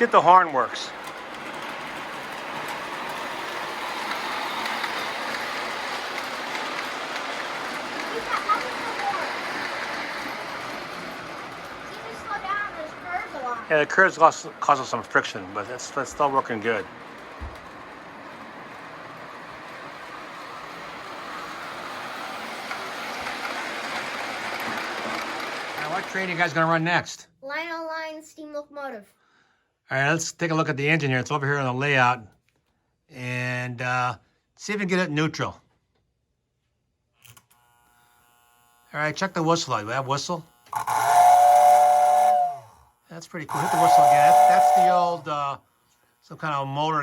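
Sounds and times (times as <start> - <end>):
model train whirring on rails: 0.0 - 27.2, 37.3 - 47.0.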